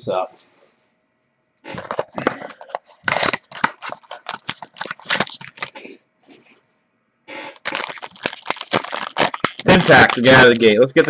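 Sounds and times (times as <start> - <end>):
card pack wrapper crinkling and tearing: 1.7 - 5.8, 7.6 - 11.0.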